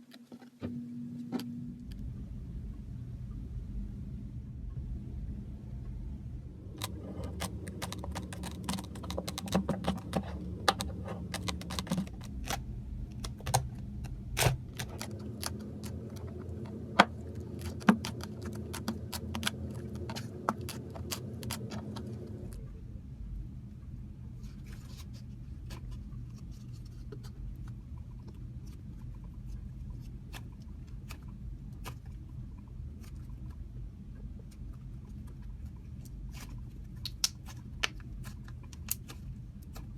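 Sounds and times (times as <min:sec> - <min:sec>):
low steady hum: 0:00.0 - 0:39.9
slime clicking and popping: 0:06.8 - 0:12.6.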